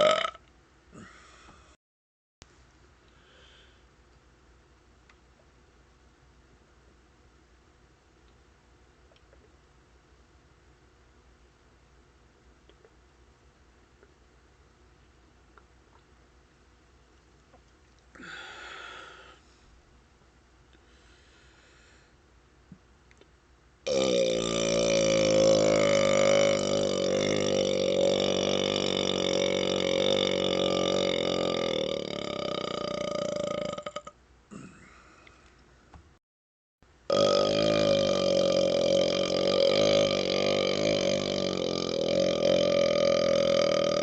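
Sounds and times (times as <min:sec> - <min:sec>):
man's long belch: 0:00.0 - 0:00.4, 0:23.9 - 0:34.9, 0:37.1 - 0:44.0
man burping: 0:00.0 - 0:01.2, 0:23.9 - 0:35.1, 0:37.1 - 0:44.0.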